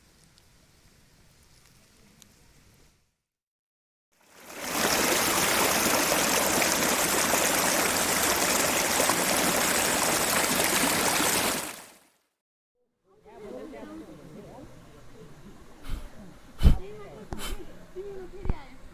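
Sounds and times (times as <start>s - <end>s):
forest stream rushing: 4.2s - 12.0s.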